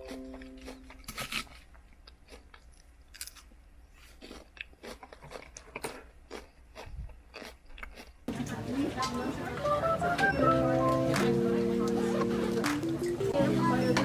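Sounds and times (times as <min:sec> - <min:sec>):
person eating crunchy food: 0:00.0 - 0:08.3.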